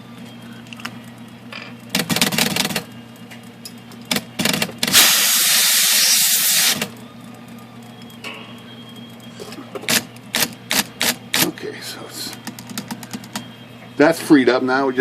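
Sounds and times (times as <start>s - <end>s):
typewriter motor hum: 1.9s - 2.9s, 4.1s - 6.9s, 9.9s - 11.5s.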